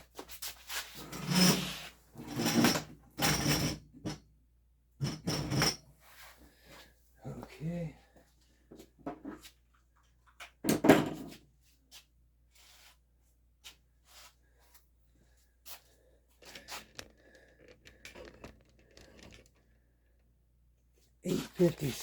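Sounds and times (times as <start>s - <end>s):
handling clicks and rustles: 16.4s - 20.3s.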